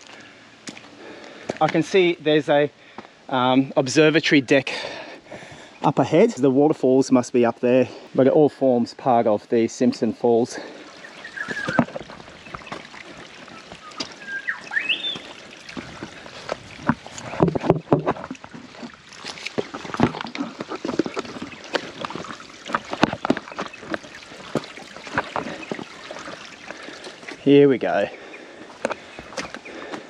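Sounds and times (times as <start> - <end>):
footsteps on dry rocks and leaves: 0.0 - 2.0, 10.7 - 30.0.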